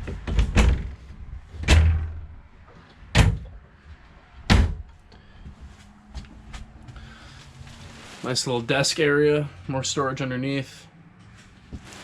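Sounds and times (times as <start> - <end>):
cabinet doors thumping shut: 0.2 - 0.9, 1.6 - 2.2, 3.2 - 3.5, 4.5 - 4.9.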